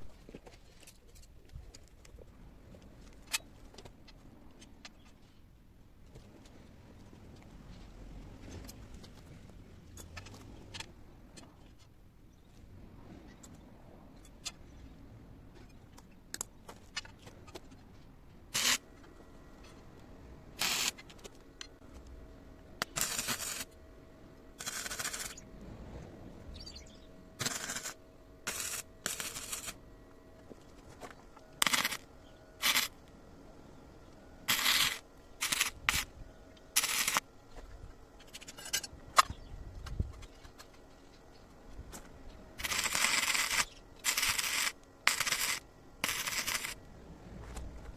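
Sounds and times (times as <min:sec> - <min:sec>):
welder arc hissing: 0:18.5 - 0:18.8, 0:20.6 - 0:21.0, 0:22.8 - 0:23.7, 0:24.6 - 0:25.4, 0:27.4 - 0:29.8, 0:31.6 - 0:32.0, 0:32.6 - 0:33.0, 0:34.5 - 0:36.1, 0:36.7 - 0:37.2, 0:42.6 - 0:46.8.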